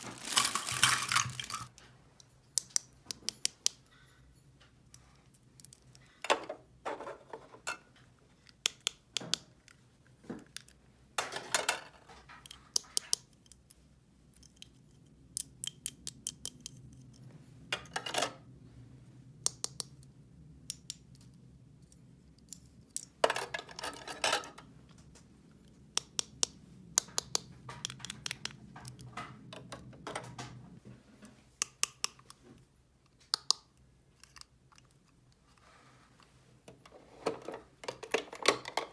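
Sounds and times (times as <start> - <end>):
sharp clicks and snips: 19.4 - 23.1, 31.6 - 32.4, 33.1 - 35.1.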